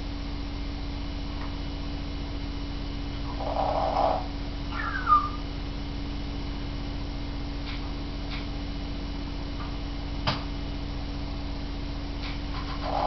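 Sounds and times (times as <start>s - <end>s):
steady low hum: 0.0s - 13.0s
parrot whistle: 3.6s - 5.4s.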